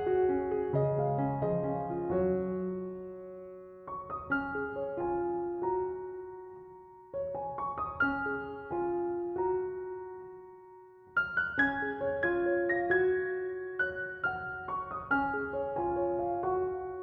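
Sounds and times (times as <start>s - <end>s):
gentle piano music: 0.0s - 17.0s.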